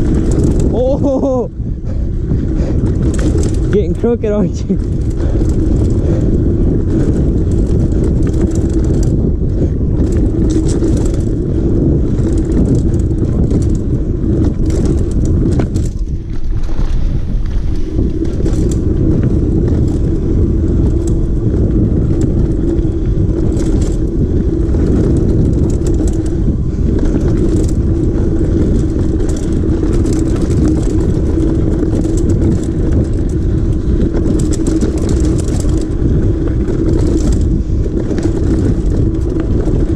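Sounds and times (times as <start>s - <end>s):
bike rattling over rocks: 0.0s - 39.9s
wind on microphone: 0.0s - 39.9s.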